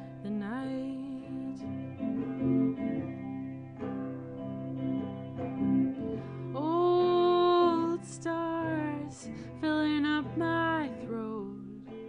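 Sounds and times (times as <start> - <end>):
woman singing: 0.0 - 2.6, 6.2 - 12.0
guitar playing: 0.0 - 12.0.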